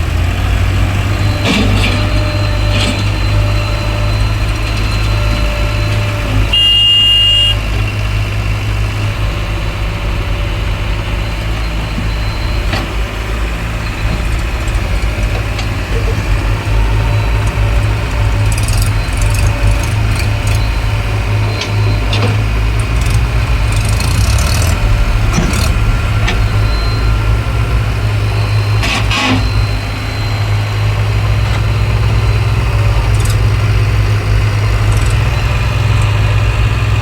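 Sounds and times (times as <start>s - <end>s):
diesel engine running: 0.0s - 37.0s
high beep: 1.6s - 7.6s, 24.5s - 33.2s.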